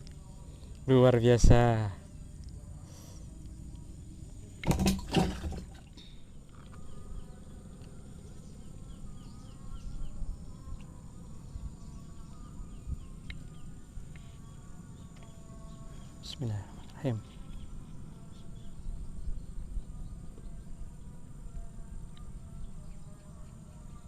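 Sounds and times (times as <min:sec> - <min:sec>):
insects or birds chirping: 0:00.0 - 0:24.0
handling knocks: 0:04.6 - 0:05.8.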